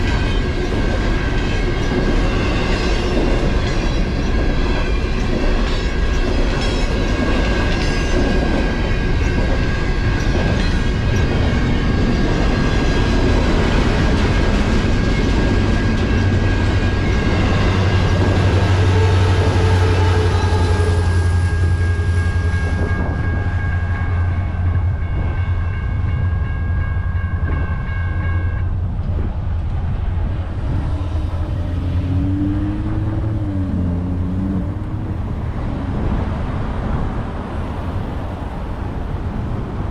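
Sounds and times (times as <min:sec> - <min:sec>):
freight train rumble and clatter: 0:00.0 - 0:39.9
high ringing tones: 0:07.6 - 0:28.7
deep drone: 0:14.6 - 0:37.4.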